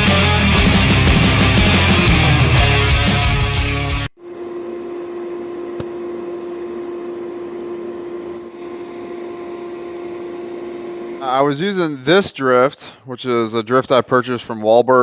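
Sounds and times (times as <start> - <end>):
rock music: 0.0 - 4.1
machine hum with steady tone: 4.2 - 11.6.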